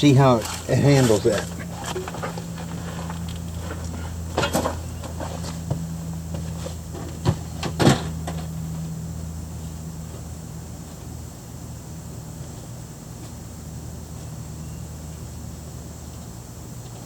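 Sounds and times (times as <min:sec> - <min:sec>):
steady low hum: 0:00.0 - 0:17.0
objects clunking and knocking: 0:00.4 - 0:08.5.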